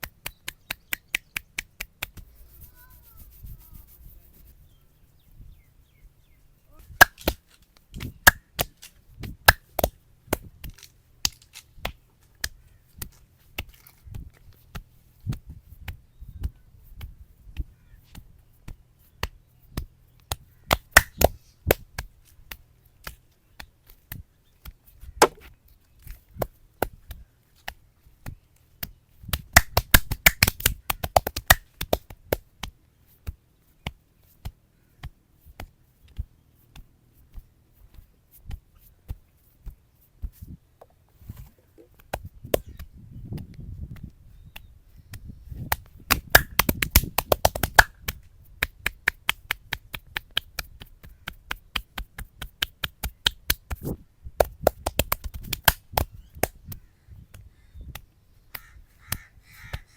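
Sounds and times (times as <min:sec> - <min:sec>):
hands slapping a head: 0:00.0 - 0:04.6, 0:07.0 - 0:07.4, 0:19.2 - 0:24.0, 0:24.6 - 0:25.5, 0:27.6 - 0:36.9, 0:44.0 - 0:59.8.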